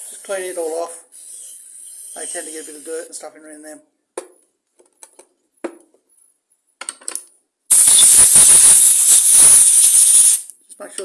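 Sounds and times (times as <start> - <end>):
loud hissing air jet: 7.7 - 10.5.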